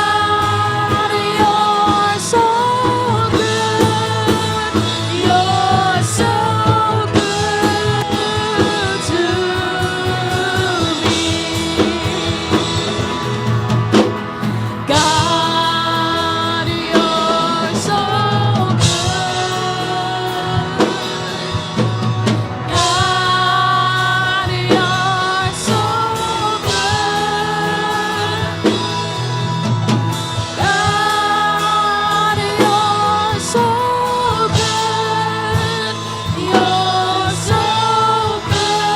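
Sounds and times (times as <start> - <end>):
band with drums and guitar: 0.0 - 38.9
person singing: 0.0 - 38.9.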